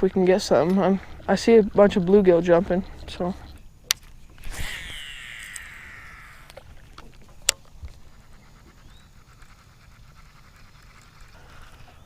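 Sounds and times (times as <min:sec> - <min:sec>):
sharp click: 0:03.8 - 0:07.6
fishing reel line whizzing: 0:04.0 - 0:12.0.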